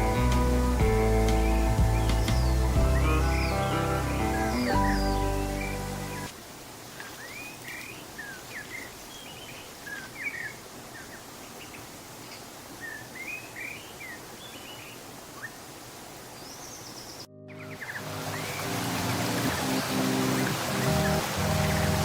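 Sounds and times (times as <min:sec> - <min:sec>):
birds chirping: 0:00.0 - 0:06.3, 0:07.0 - 0:22.0
intro music: 0:00.0 - 0:06.3, 0:17.3 - 0:22.0
steady outdoor hiss: 0:00.0 - 0:22.0.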